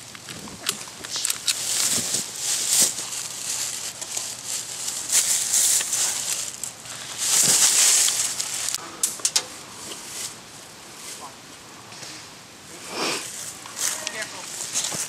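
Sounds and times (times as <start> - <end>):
dry leaves rustling and crunching: 0.0 - 8.8, 13.2 - 15.0.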